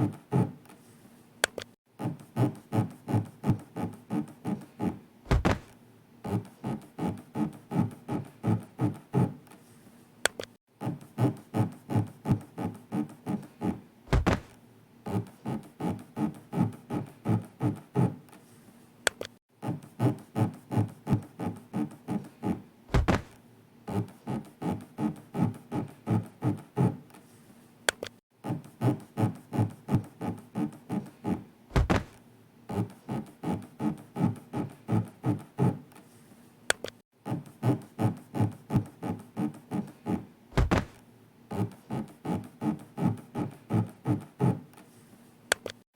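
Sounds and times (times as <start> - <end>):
low thud: 5.3 - 5.7, 14.1 - 14.6, 22.9 - 23.4, 31.7 - 32.2, 40.6 - 41.0.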